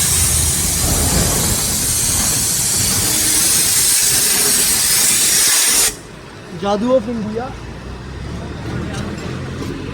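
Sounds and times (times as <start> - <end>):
pressure washer spraying: 0.0 - 6.1.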